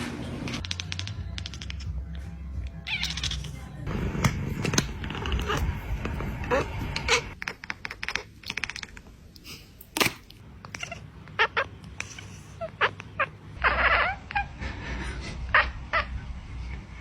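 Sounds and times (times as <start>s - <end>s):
cat meowing: 2.6s - 3.7s, 10.7s - 14.5s.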